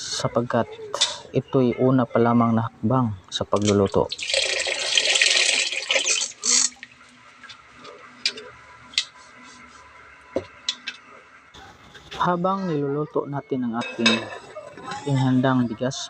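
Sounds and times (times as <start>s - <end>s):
water pouring into a pot: 4.1s - 6.8s.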